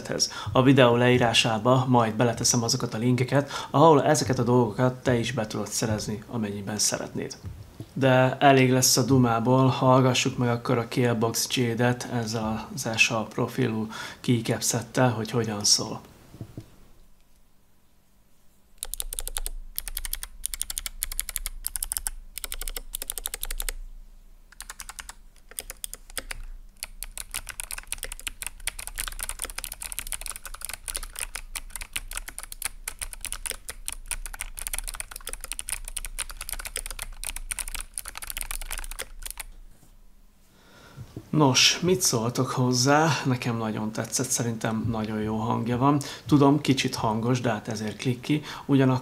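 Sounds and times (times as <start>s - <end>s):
mechanical keyboard typing: 18.8s - 23.8s, 24.5s - 39.5s.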